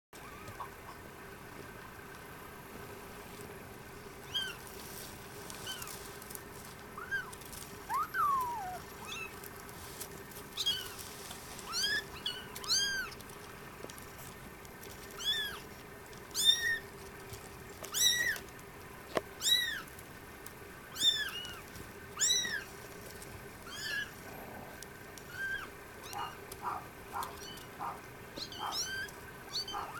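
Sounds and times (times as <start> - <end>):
kittens mewing: 0.2 - 1.1, 6.9 - 9.6, 23.7 - 29.9.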